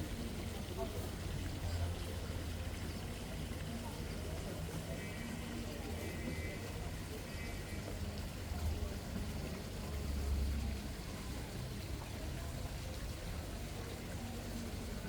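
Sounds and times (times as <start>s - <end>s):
water flowing: 0.0s - 15.0s.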